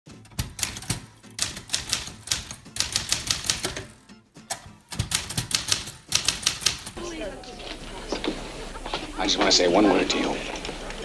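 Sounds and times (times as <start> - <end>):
manual typewriter typing: 0.1 - 7.0.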